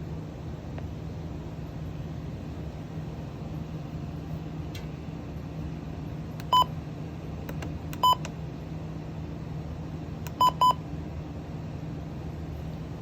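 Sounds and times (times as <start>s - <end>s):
steady low hum: 0.0s - 13.0s
short electronic beeps: 8.0s - 8.2s.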